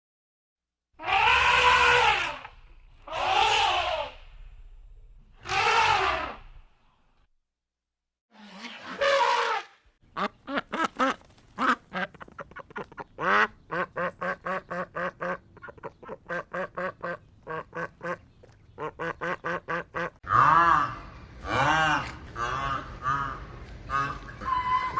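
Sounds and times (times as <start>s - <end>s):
duck quacking: 10.1s - 24.9s.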